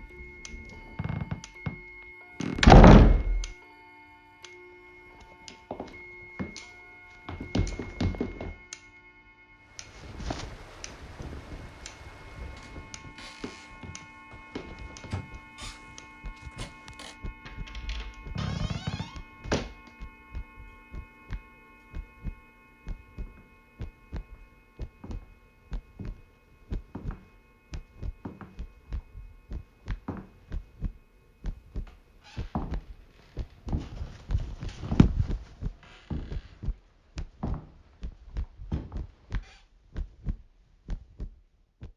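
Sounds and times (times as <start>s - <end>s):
chord of held tones: 0.0s - 33.1s
rustling hiss: 9.7s - 36.3s.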